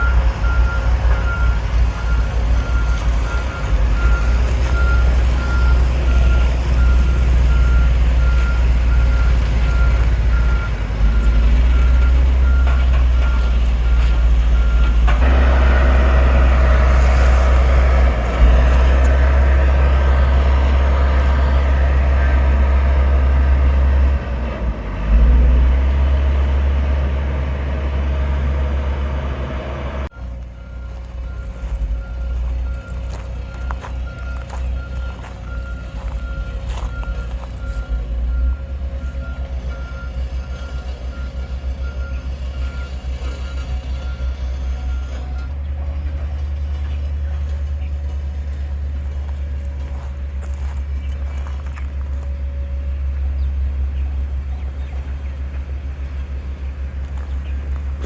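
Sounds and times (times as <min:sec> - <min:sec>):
reversing alarm beeping: 0:00.0 - 0:23.7, 0:30.1 - 0:45.6
diesel engine rumble: 0:00.0 - 0:58.0.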